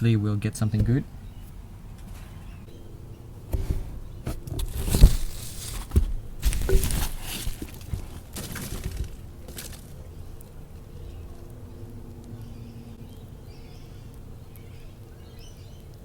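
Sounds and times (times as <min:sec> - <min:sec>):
recorder handling rustling and knocking: 0:03.5 - 0:09.9.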